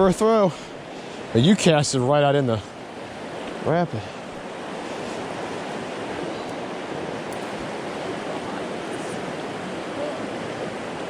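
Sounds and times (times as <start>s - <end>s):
river rushing through rapids: 2.8s - 11.0s.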